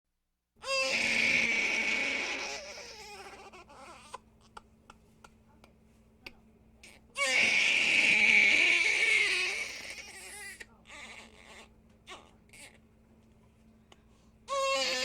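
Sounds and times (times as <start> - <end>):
baby crying: 0.6 - 4.6, 7.2 - 12.8, 14.5 - 15.0.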